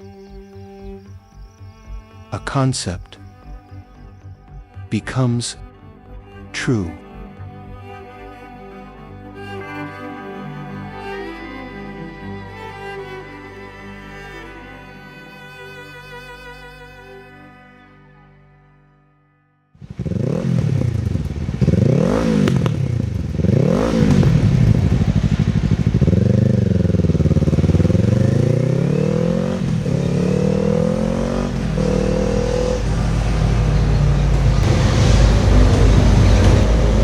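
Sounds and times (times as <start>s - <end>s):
motorcycle engine starting and revving: 19.8s - 37.0s.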